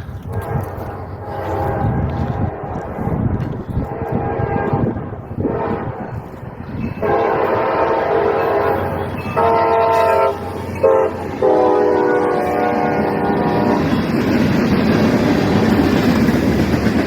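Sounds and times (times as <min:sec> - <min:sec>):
low rumble of train: 0:00.0 - 0:17.0
locomotive horn blasts: 0:00.2 - 0:06.4, 0:07.0 - 0:14.1.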